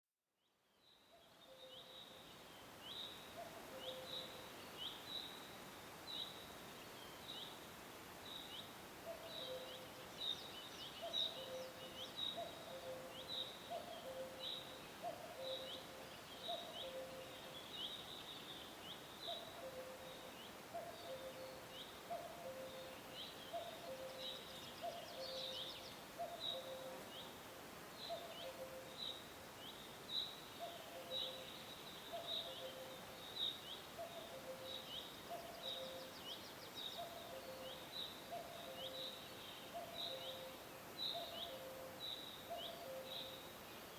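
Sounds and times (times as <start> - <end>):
faint background hiss: 0.2 - 43.9
cuckoo calling: 11.0 - 17.4, 19.3 - 27.1, 34.0 - 36.1, 39.8 - 43.4.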